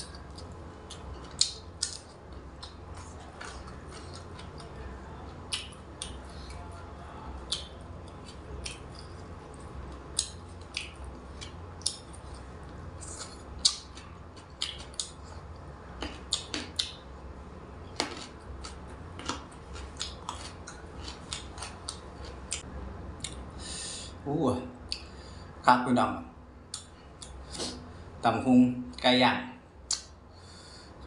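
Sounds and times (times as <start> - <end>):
crunchy chewing: 0.0 - 6.8, 7.4 - 17.1, 17.9 - 23.4
steady low hum: 0.0 - 31.0.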